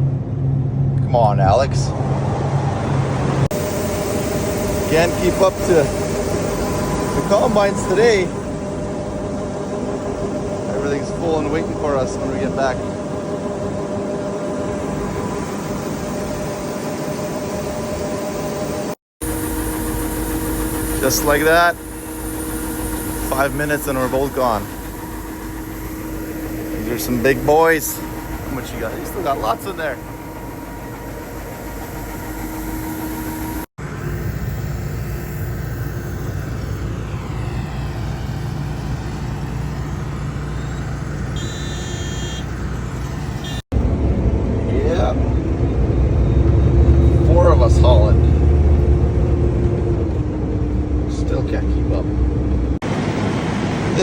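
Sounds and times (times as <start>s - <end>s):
vehicle engine drone: 0.0s - 54.0s
even rushing noise: 1.9s - 18.0s, 19.2s - 41.4s.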